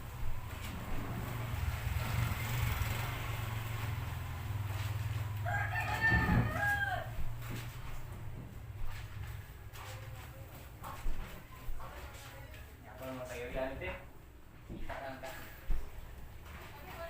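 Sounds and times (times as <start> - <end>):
rooster crowing: 4.7 - 7.6.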